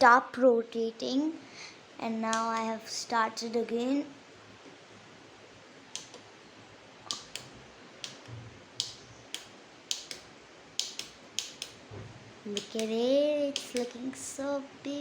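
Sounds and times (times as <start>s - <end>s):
faint steady hiss: 0.0s - 15.0s
light sharp clicks: 12.5s - 14.0s.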